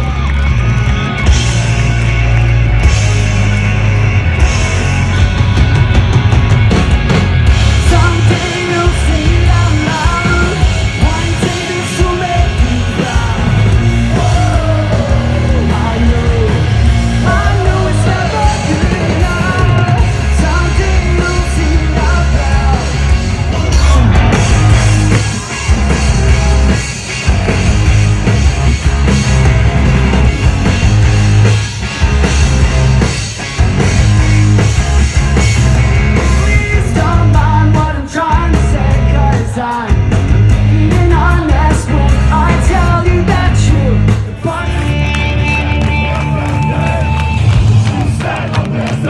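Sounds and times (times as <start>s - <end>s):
live rock band playing: 0.0s - 49.0s
person singing and yelling: 7.8s - 25.5s.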